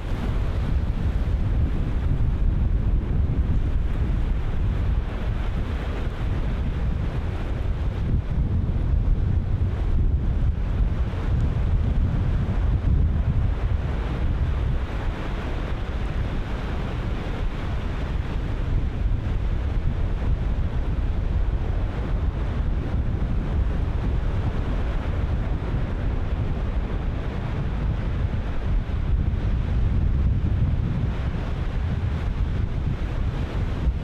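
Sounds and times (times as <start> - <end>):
wind buffeting microphone: 0.0 - 34.0.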